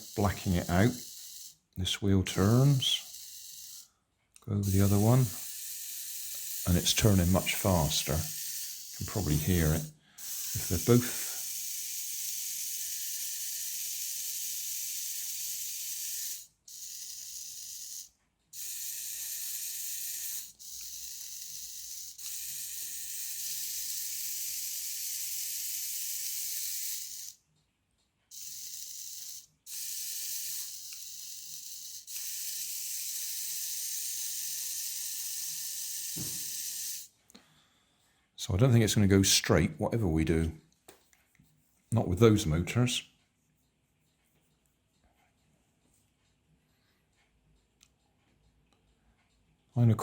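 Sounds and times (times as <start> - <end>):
toy car motors whirring: 0.0 - 4.0, 4.6 - 27.4, 28.3 - 37.1.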